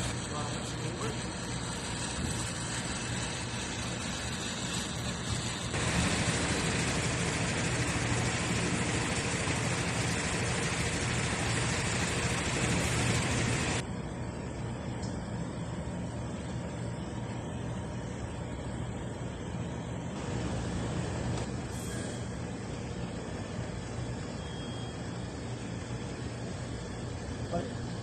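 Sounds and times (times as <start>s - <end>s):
power tool running: 0.0s - 13.8s
low workshop hum: 0.0s - 28.0s.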